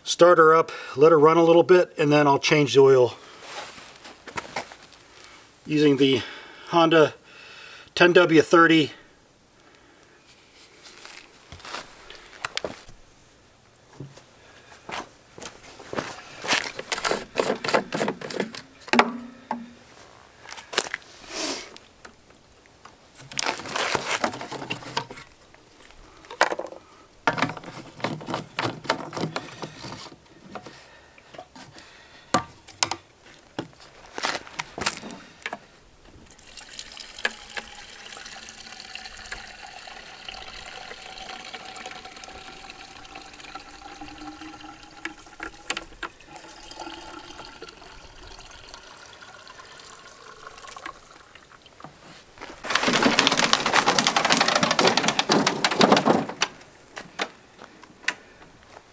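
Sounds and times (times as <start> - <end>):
handling clicks and knocks: 15.4 - 20.0, 26.3 - 30.8, 32.3 - 35.7, 51.8 - 57.4
gasoline pouring into fuel tank: 15.7 - 19.9, 23.2 - 25.2, 27.3 - 30.2, 36.3 - 56.6.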